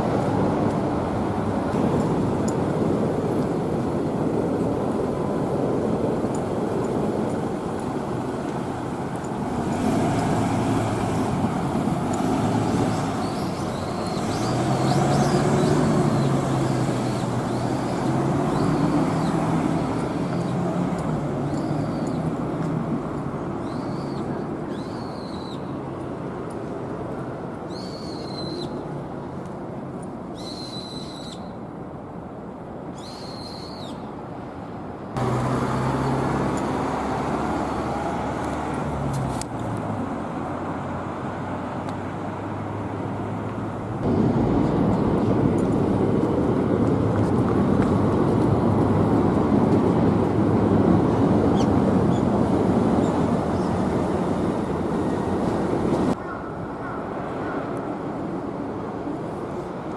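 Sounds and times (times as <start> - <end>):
train rumbling past: 0.0 - 23.1, 43.8 - 58.5
steady traffic noise: 0.0 - 59.9.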